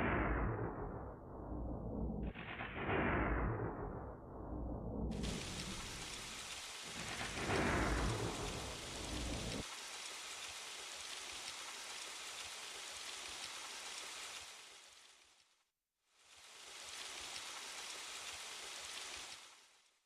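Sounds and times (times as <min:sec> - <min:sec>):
low thunder rumble: 0:00.0 - 0:09.6
rain hiss: 0:05.1 - 0:20.0.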